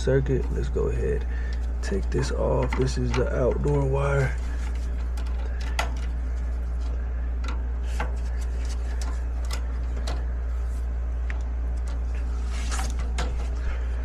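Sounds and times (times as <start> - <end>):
steady low hum: 0.0 - 14.0
clicks and taps of wiring: 1.2 - 10.3.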